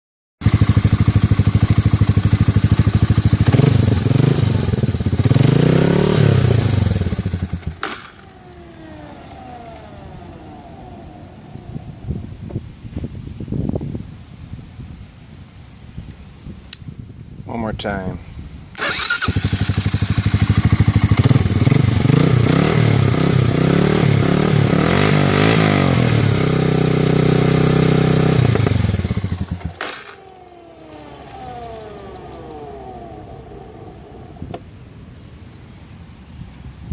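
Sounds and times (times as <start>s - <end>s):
engine idling: 0.4s - 4.1s, 18.8s - 22.0s, 28.4s - 34.9s
warbling engine shutdown: 0.6s - 12.5s, 18.8s - 35.2s
falling whines: 7.7s - 12.3s, 28.8s - 34.9s
click: 16.1s - 16.9s.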